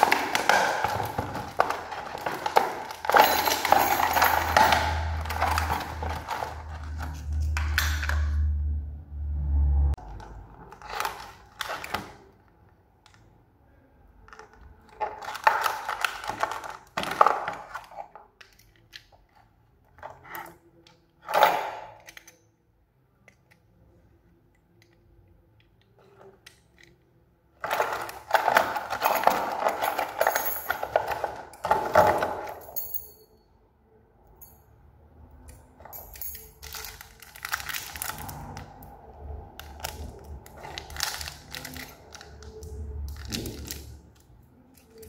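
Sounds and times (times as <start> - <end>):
rustling and crinkling: 0.0 - 7.5
metallic lock parts clicking: 20.0 - 22.6, 24.5 - 33.3, 39.6 - 45.0.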